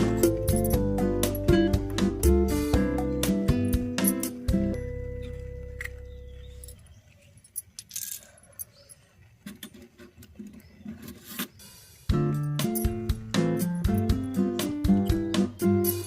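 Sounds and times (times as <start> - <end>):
guitar music: 0.0 - 6.6, 12.1 - 16.0.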